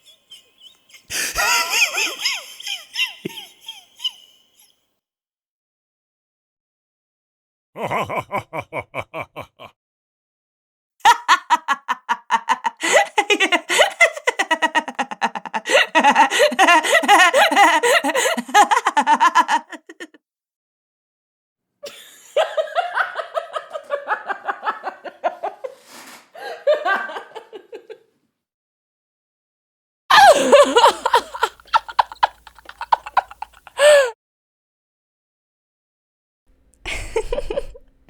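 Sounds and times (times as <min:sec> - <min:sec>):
people laughing: 0:00.0 - 0:04.5, 0:07.8 - 0:09.8, 0:11.0 - 0:20.2, 0:21.8 - 0:28.0, 0:30.1 - 0:34.1, 0:36.9 - 0:37.8.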